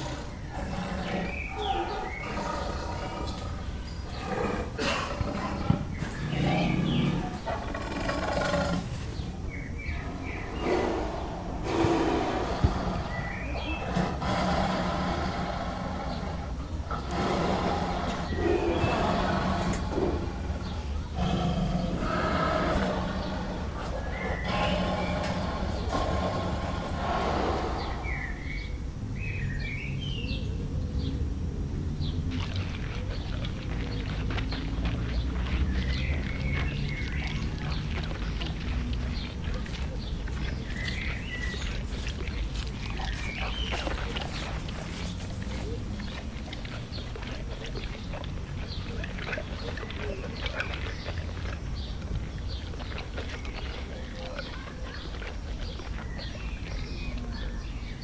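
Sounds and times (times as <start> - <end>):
large animal deep call: 0.0 - 9.3, 9.9 - 28.7
bird chirping: 0.0 - 31.1, 32.0 - 58.0
steady low rumble: 0.0 - 58.0.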